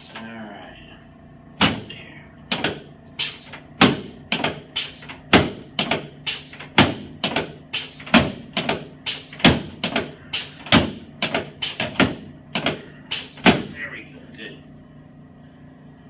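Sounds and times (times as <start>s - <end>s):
rhythmic sharp knocks: 2.5s - 12.8s.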